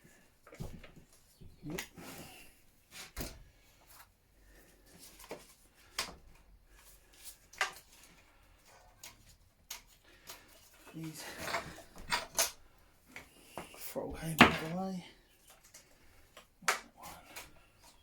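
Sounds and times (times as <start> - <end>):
hand tools clicking and knocking: 8.9 - 14.8.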